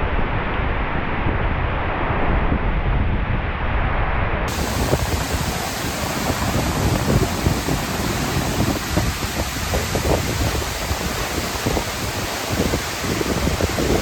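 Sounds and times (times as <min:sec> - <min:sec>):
waterfall rushing: 0:04.5 - 0:14.0.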